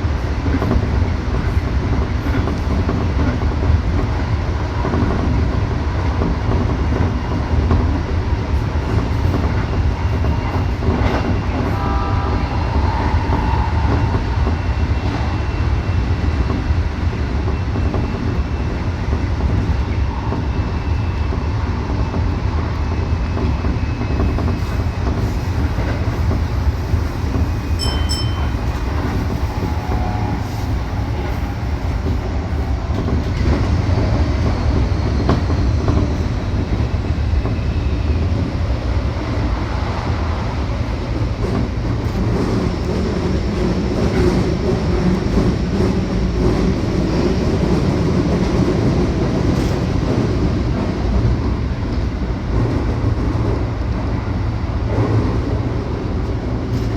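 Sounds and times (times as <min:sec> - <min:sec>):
train wheels rumbling on track: 0:00.0 - 0:56.9
brief high tone: 0:27.8 - 0:28.8.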